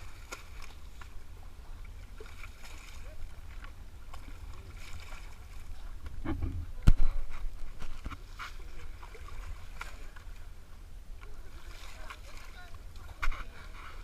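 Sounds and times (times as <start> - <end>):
water splashing and sloshing: 0.0 - 14.0.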